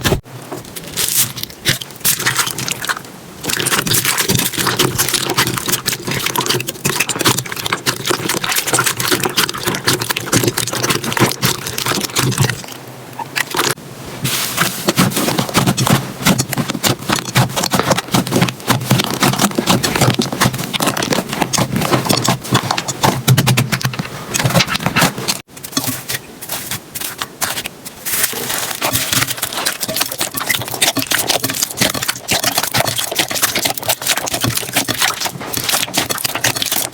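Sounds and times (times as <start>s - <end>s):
slime squeezed crackling and popping: 0.8s - 12.6s.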